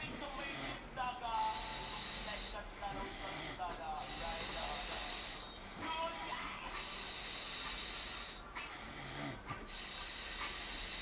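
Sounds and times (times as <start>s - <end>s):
man snoring: 0.0s - 11.0s
low snoring rattle: 6.8s - 11.0s.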